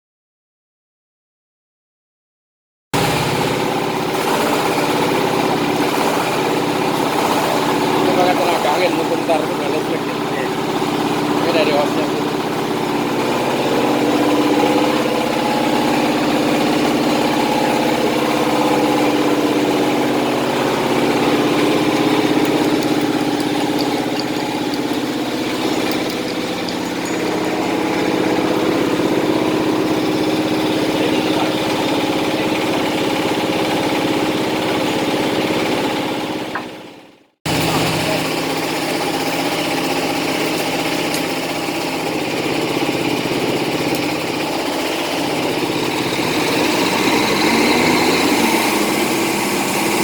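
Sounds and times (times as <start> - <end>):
truck diesel engine idling: 3.0 - 50.0.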